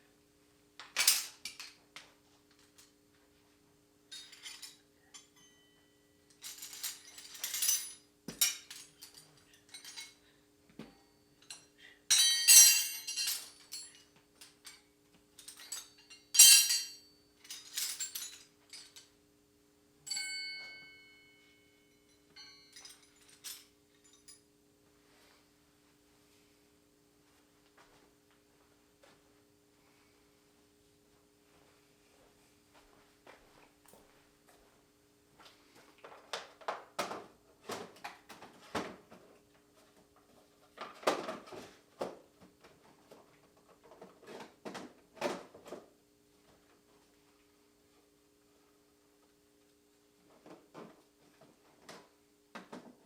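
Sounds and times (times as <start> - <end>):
faint steady hum: 0.0 - 37.2
metal hand tools clinking: 4.1 - 5.7, 6.3 - 10.2, 11.3 - 14.8, 15.4 - 19.0, 20.1 - 21.2
metal piece ringing out: 16.4 - 17.0.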